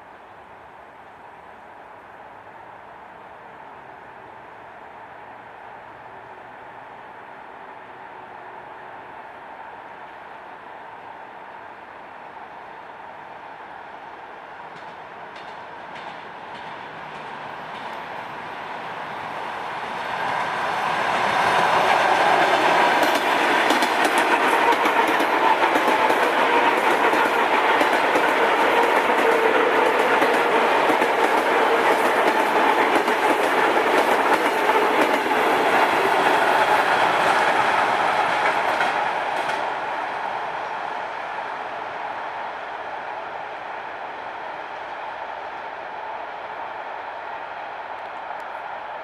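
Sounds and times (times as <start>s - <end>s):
train passing: 0.0s - 49.0s
wheels clicking over rail joints: 21.7s - 39.7s.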